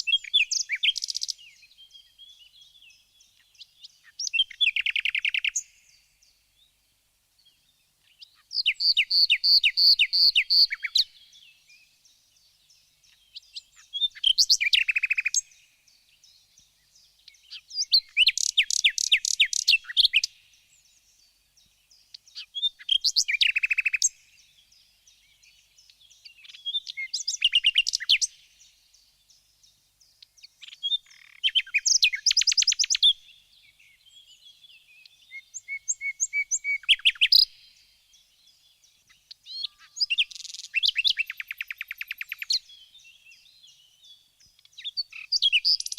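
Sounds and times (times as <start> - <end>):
birds chirping: 0.0 - 45.9.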